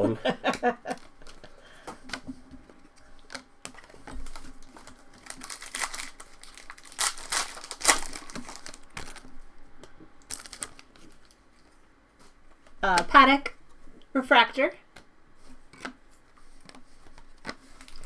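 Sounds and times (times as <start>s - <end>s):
foil wrappers crinkling and tearing: 0.6s - 2.3s, 2.9s - 9.5s, 10.2s - 11.7s, 15.5s - 18.0s.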